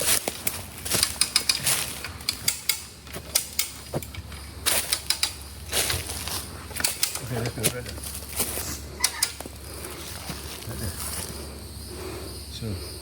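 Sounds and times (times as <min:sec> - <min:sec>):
clicks clacks and rattles: 0:00.0 - 0:08.1.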